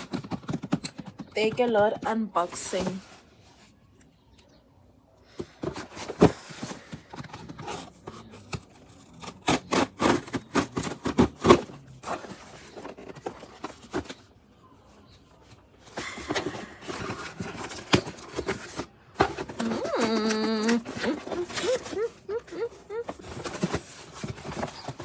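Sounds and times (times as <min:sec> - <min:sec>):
packaging scraping and rustling: 0:05.4 - 0:14.3, 0:15.5 - 0:25.0.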